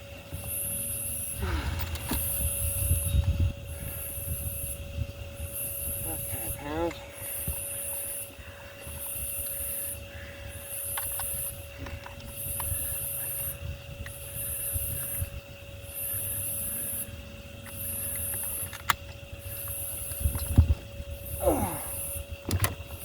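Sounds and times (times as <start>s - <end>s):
night insects buzzing: 0.0s - 23.0s.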